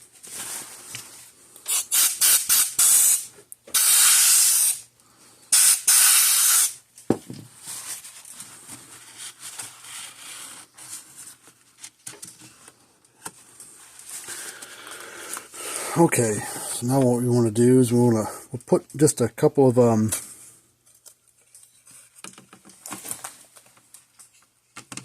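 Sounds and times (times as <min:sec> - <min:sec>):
pressurised spray hissing: 0:01.7 - 0:04.8, 0:05.6 - 0:06.8.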